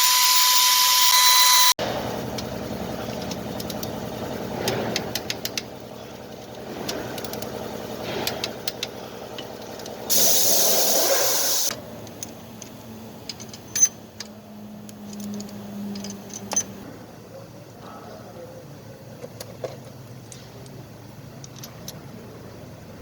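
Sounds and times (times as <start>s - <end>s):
pressurised jet hiss: 10.1s - 11.7s.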